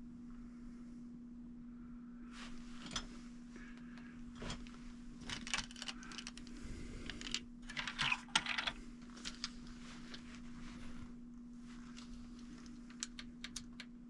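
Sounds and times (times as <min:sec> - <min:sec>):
steady low hum: 0:00.0 - 0:14.0
packaging rustling and clicks: 0:04.4 - 0:11.0, 0:11.8 - 0:13.9.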